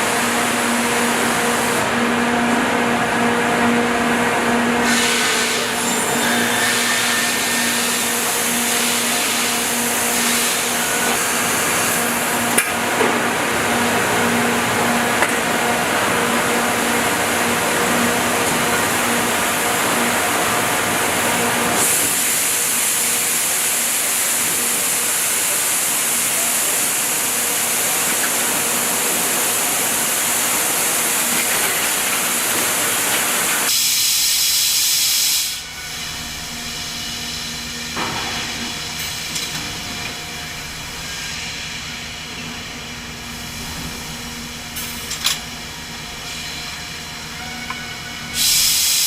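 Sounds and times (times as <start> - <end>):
loud steady hiss: 4.8 - 12.6, 15.8 - 39.5, 45.8 - 49.0.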